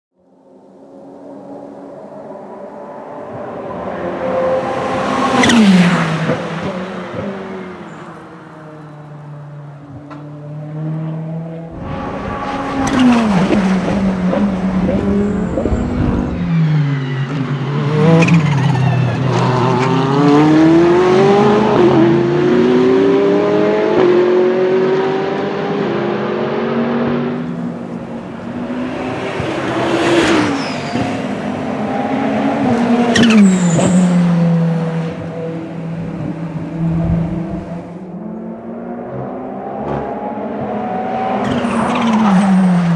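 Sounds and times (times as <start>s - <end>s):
race car engine revving: 10.1s - 42.9s.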